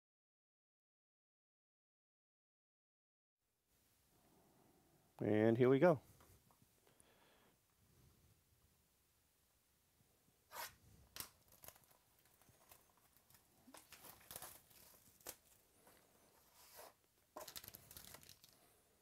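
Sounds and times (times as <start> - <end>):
packaging tearing and crinkling: 10.5 - 15.6, 17.4 - 18.7.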